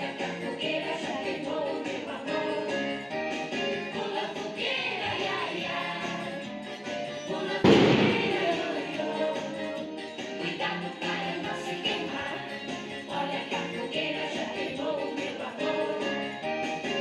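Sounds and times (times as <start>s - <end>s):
song with sung vocals: 0.0s - 17.0s
loud bang or crash: 7.6s - 8.8s.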